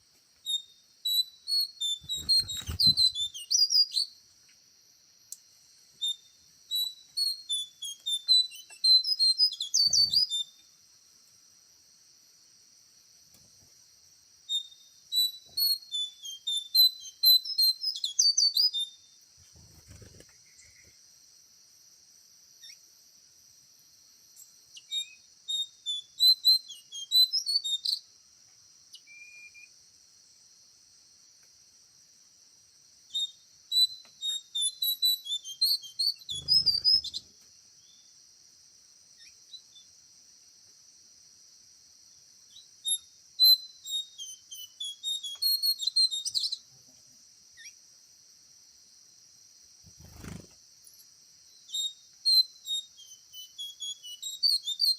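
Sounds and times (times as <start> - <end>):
small bird chirping: 0.0 - 10.8, 14.4 - 21.1, 22.6 - 22.9, 24.3 - 28.1, 28.8 - 29.8, 33.1 - 38.2, 39.1 - 40.0, 42.1 - 47.9, 49.8 - 54.9.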